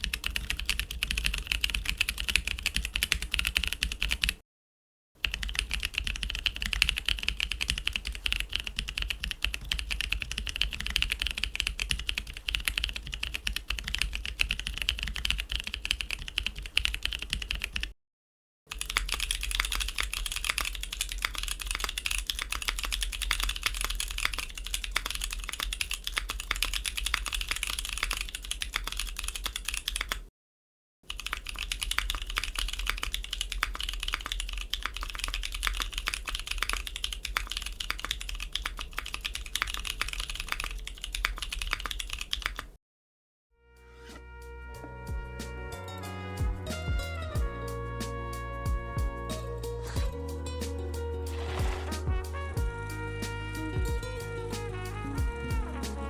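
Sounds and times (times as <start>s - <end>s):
mechanical keyboard typing: 0.0s - 4.4s, 5.2s - 17.9s, 18.7s - 30.3s, 31.1s - 42.8s.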